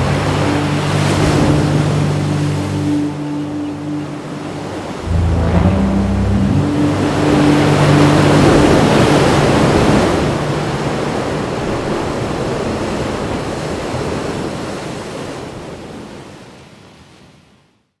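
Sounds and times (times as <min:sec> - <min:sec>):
low held notes: 0:00.0 - 0:12.9
ocean wave breaking: 0:00.0 - 0:13.7.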